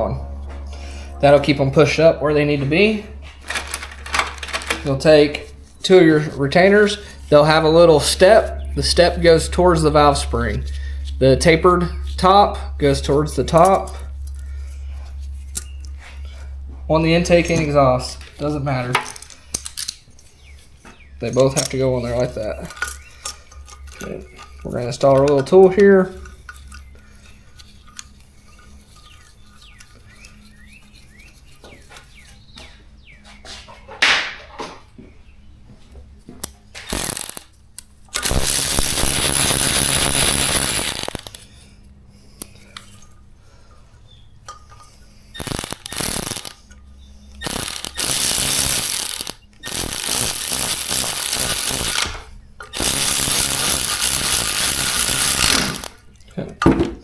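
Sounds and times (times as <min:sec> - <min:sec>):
power tool bursts: 0:03.2 - 0:05.2, 0:36.8 - 0:37.5, 0:38.1 - 0:41.4, 0:45.4 - 0:46.6, 0:47.4 - 0:56.1.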